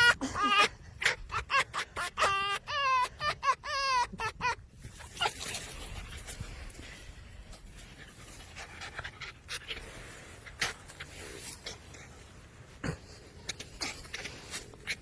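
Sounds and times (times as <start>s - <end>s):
wolf panting: 5.3s - 12.5s.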